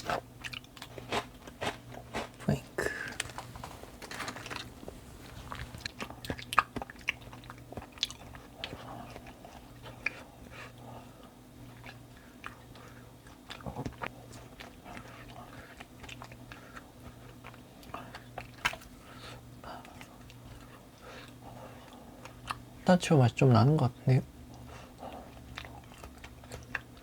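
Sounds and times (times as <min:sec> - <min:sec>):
chewing crunchy snack: 0:00.0 - 0:22.8, 0:24.4 - 0:27.0.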